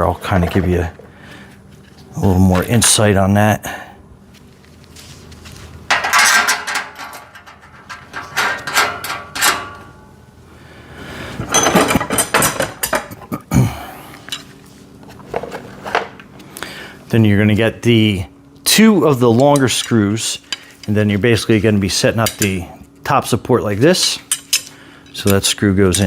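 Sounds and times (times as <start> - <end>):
metal parts clinking and clattering: 5.9 - 9.9, 11.5 - 13.1, 24.2 - 26.0.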